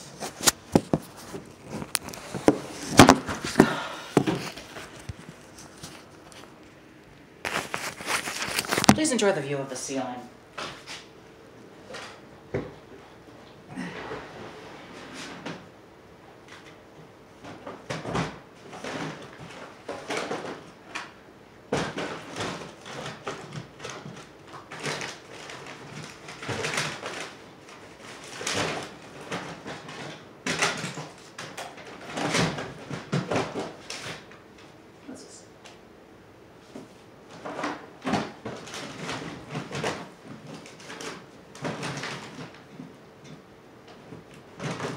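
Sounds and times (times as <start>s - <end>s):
rummaging through plastic totes: 0.0s - 6.6s, 7.4s - 9.3s, 17.4s - 34.4s, 36.7s - 44.9s.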